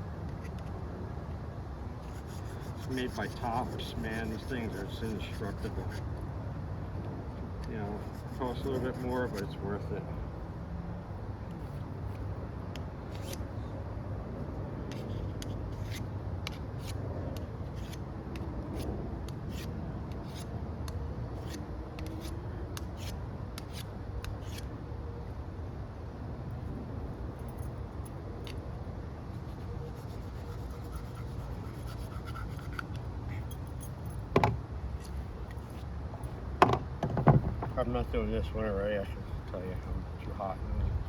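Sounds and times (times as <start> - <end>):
knife scraping on sharpening stone: 2.1 - 6.0, 8.0 - 9.6.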